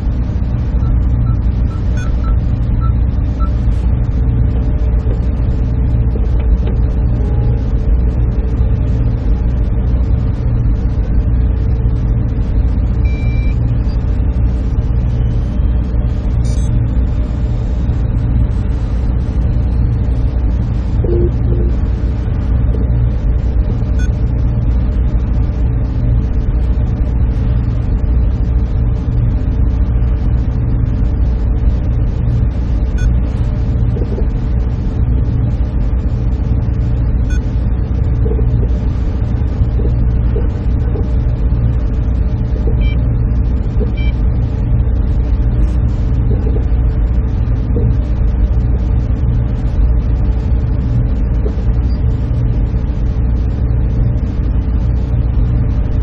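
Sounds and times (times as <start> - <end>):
server room machines humming: 0.0 - 56.0
faint short tones: 0.8 - 3.6.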